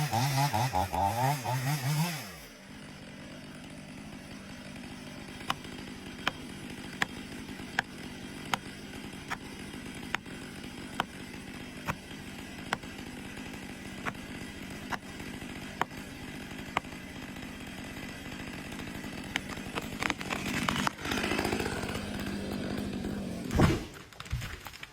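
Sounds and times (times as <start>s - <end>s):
chainsaw running: 0.0s - 24.0s.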